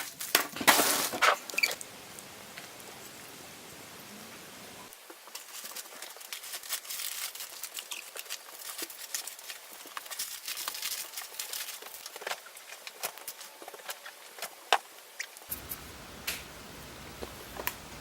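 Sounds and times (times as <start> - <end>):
plastic packaging crinkling: 5.0 - 15.7.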